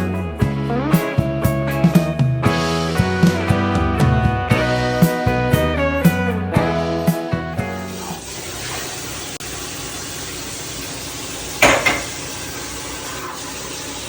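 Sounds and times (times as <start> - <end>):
steady kitchen hiss: 7.6 - 14.0
dishware clink: 11.6 - 12.3.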